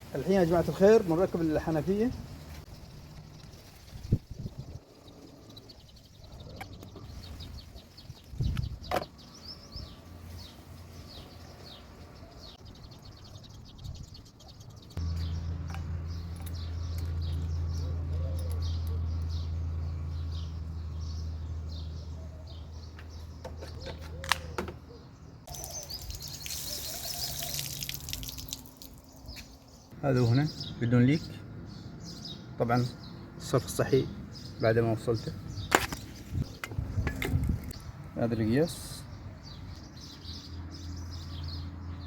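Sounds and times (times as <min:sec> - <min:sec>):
birds chirping: 0:00.0 - 0:42.0
water gushing from faucet: 0:25.6 - 0:29.0.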